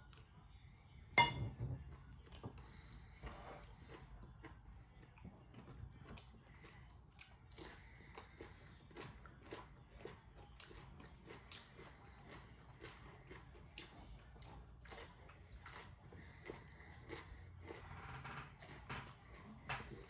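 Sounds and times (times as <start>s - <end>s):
person chewing with wet mouth smacks: 5.6s - 17.9s.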